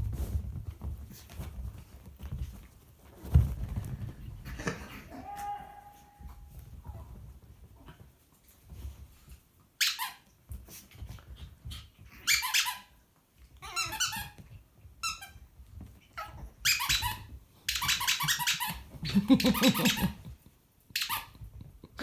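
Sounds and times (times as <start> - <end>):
squeaky dog toy squeaking: 9.8 - 10.2, 12.2 - 12.9, 13.6 - 14.4, 16.6 - 18.9, 21.0 - 21.3.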